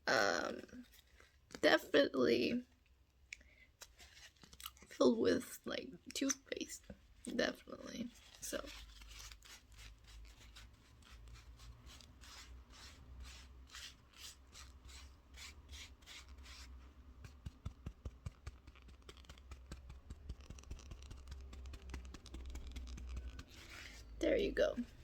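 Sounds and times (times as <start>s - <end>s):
cloth wiping against microphone: 8.0s - 25.0s.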